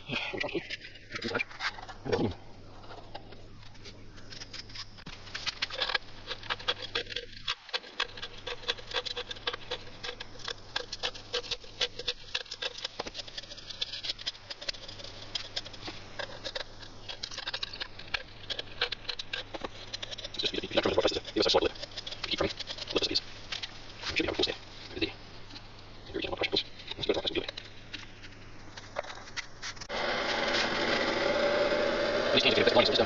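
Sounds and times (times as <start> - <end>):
thin metal sheet crinkling: 0.5 - 30.7.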